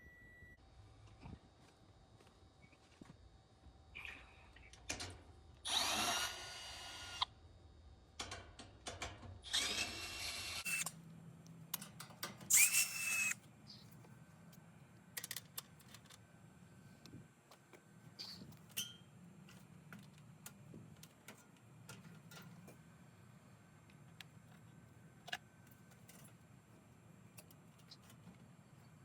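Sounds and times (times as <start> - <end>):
power drill whining: 5.7 - 7.2, 9.4 - 10.9, 12.5 - 13.4.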